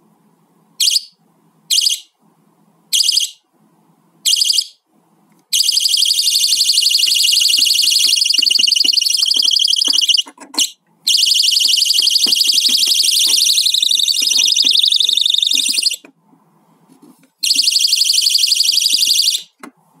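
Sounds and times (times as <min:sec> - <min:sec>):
alarm chirp: 0:00.8 - 0:02.2, 0:02.9 - 0:03.4, 0:04.2 - 0:04.8, 0:05.5 - 0:16.1, 0:17.4 - 0:19.6
alarm siren pulsing: 0:03.0 - 0:03.4, 0:04.3 - 0:04.8, 0:05.6 - 0:10.3, 0:11.1 - 0:16.0, 0:17.4 - 0:19.5.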